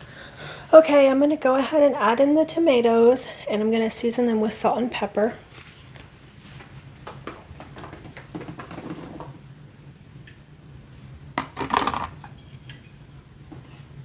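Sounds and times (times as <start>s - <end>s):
kitchenware clinking and clattering: 11.4s - 13.1s.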